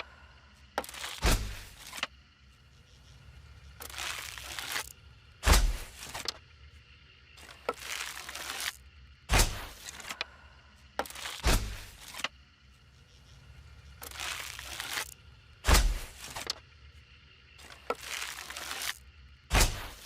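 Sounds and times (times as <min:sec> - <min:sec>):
bow shot thuds: 0:05.4 - 0:05.9, 0:15.6 - 0:16.2.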